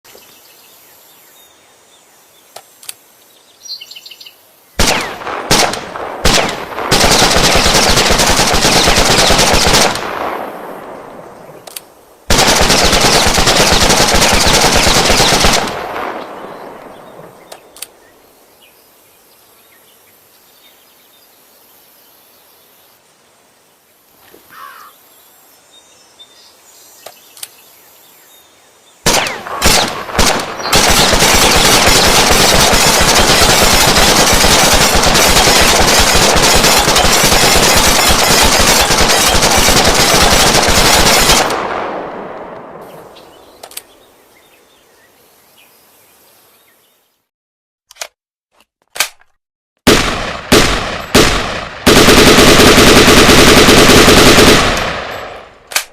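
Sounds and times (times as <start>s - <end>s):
assault rifle automatic fire: 4.8s - 11.1s, 12.3s - 17.3s, 29.0s - 42.4s, 49.9s - 55.6s
single gunshots: 4.8s - 17.9s, 29.0s - 43.6s, 49.9s - 55.9s.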